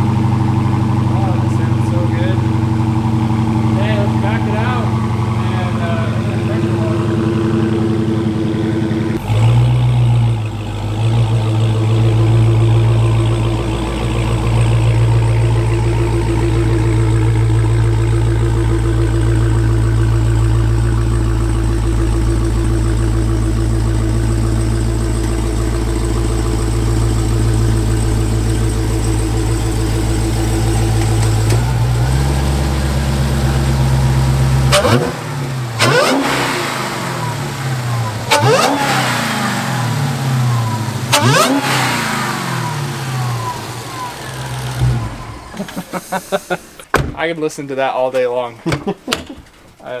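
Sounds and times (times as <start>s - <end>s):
car engine idling and revving: 0.0s - 47.2s.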